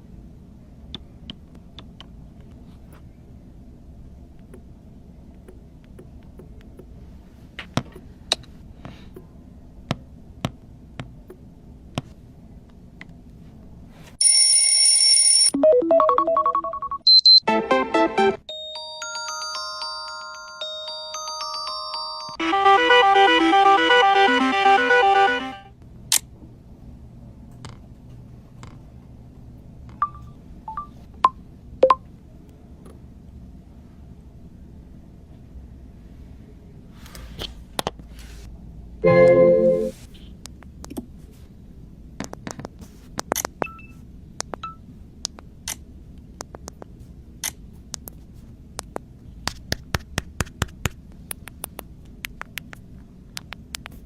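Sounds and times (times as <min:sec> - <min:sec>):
marimba-like ringtone: 0:15.1 - 0:17.4, 0:18.5 - 0:22.4, 0:39.0 - 0:39.9
short high blips: 0:39.0 - 0:40.0.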